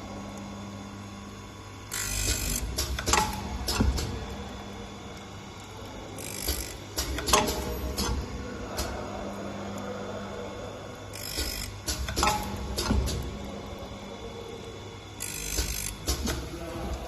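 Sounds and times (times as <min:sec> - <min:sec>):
motor hum: 0:00.0 - 0:17.0
machine clacks and knocks: 0:11.3 - 0:13.3.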